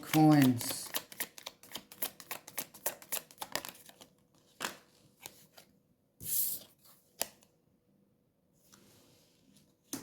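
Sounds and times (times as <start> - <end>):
cards shuffling flicks: 0.1 - 5.4.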